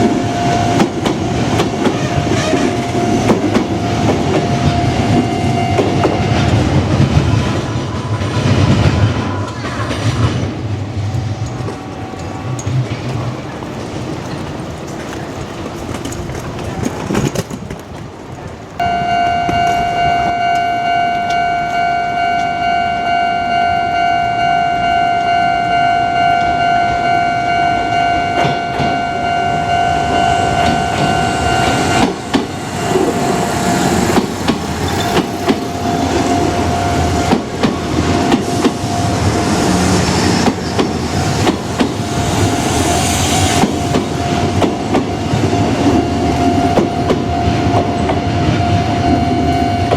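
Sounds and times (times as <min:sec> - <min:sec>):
train wheels clattering on rails: 0:00.0 - 0:21.8, 0:28.3 - 0:29.1, 0:30.1 - 0:49.2
level crossing warning bell: 0:02.4 - 0:07.0, 0:18.8 - 0:39.4, 0:43.6 - 0:49.9.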